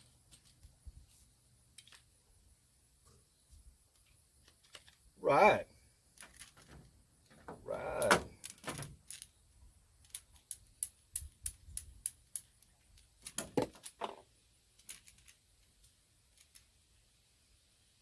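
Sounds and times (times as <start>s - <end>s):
small hard parts clicking: 0.0s - 0.8s, 1.6s - 2.2s, 3.9s - 5.1s, 6.0s - 16.8s.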